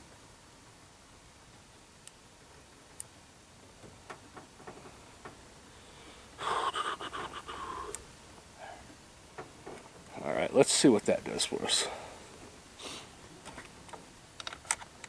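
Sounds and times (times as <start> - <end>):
rifle handling clicks: 14.4 - 14.9.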